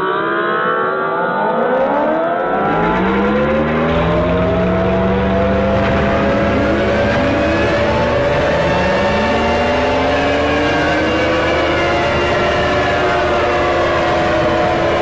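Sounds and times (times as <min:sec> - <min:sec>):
synthesized emergency alert tone: 0:01.4 - 0:15.0
low rumble: 0:02.4 - 0:13.2.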